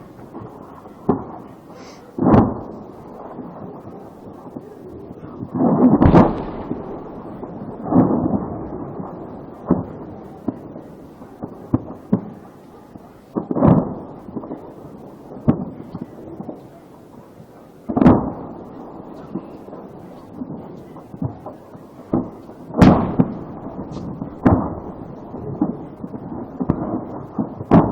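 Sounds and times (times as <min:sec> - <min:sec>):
heavy explosion booms: 0:02.1 - 0:04.3, 0:05.3 - 0:12.4, 0:17.9 - 0:19.8, 0:22.1 - 0:27.9
sharp blast cracks: 0:05.6 - 0:10.2, 0:22.1 - 0:25.1.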